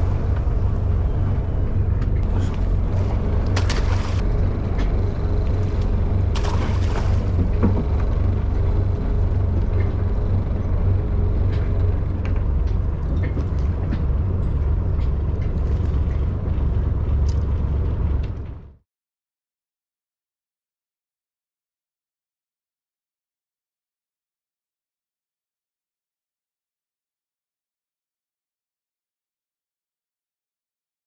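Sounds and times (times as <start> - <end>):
low engine rumble: 0.0 - 18.8.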